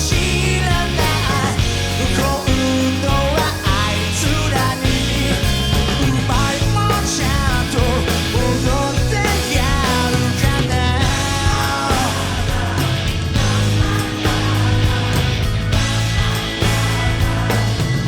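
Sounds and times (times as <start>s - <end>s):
live pop-rock band: 0.0s - 18.0s.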